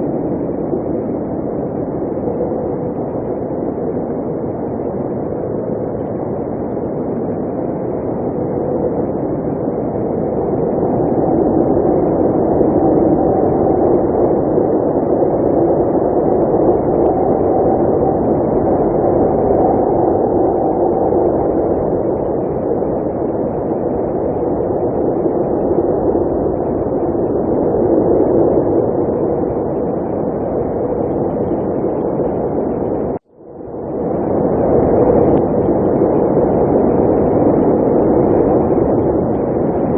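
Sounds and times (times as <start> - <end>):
blizzard wind blowing: 0.0 - 39.9.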